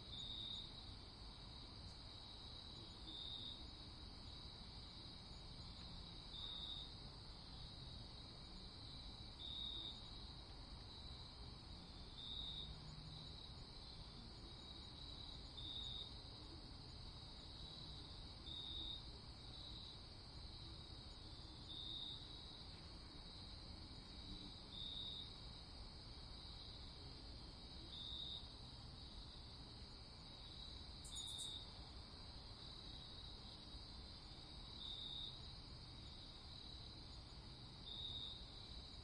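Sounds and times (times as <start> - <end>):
low background hiss: 0.0 - 39.0
high-pitched insect trill: 30.3 - 31.7.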